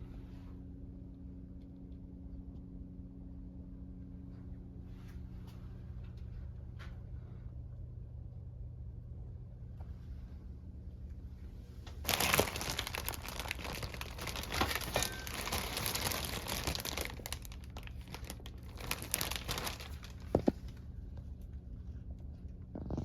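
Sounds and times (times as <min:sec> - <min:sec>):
low steady hum: 0:00.0 - 0:23.0
plastic crinkling: 0:12.0 - 0:20.8.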